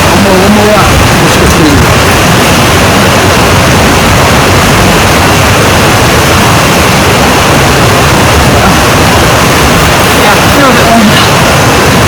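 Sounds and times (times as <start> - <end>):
river and waterfall rushing: 0.0 - 12.0.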